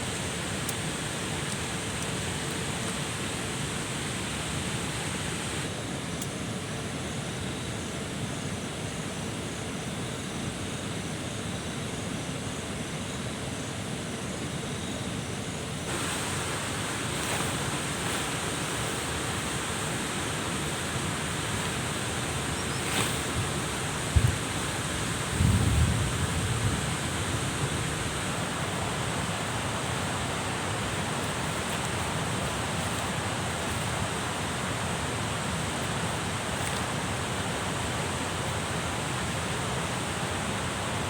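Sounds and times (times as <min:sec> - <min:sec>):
water rushing: 0:15.9 - 0:25.6, 0:26.8 - 0:41.0
faint high chirping: 0:20.7 - 0:23.6.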